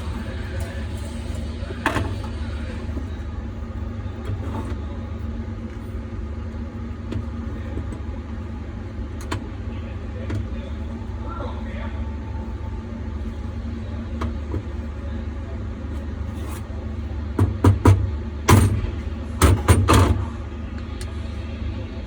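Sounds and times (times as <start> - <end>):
low hum: 0.0 - 17.2.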